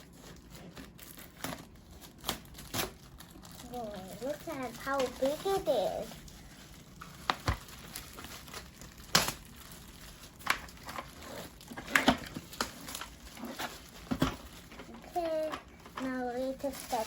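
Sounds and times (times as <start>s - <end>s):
plastic packaging crinkling: 0.0s - 17.0s
sharp clicks and crackles: 1.1s - 6.3s.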